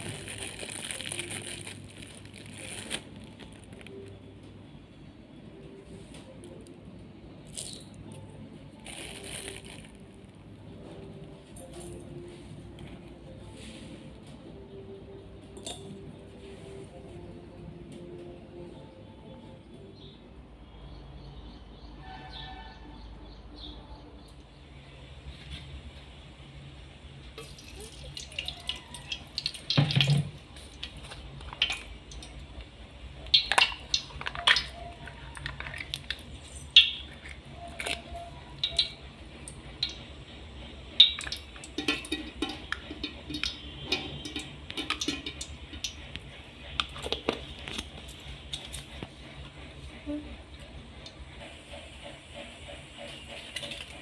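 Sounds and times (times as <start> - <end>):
low steady hum: 0.0 - 52.2
utensils and dishes clinking: 10.7 - 13.0, 15.5 - 16.3, 33.2 - 39.1, 41.0 - 49.0
water running: 27.4 - 32.4.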